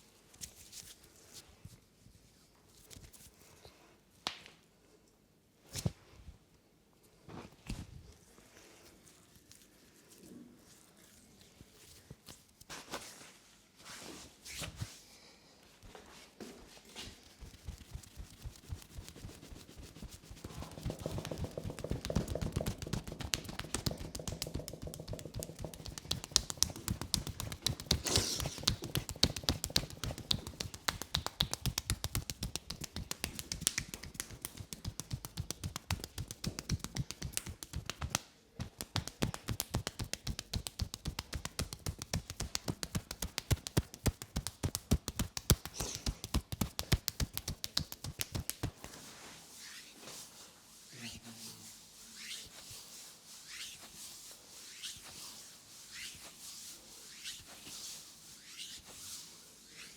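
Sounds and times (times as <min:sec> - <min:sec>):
hands slapping a back: 0:17.4 - 0:49.0.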